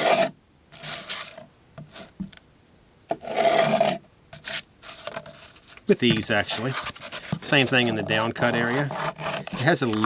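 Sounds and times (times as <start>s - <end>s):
knife slicing through cardboard: 0.0s - 2.1s, 6.2s - 10.0s.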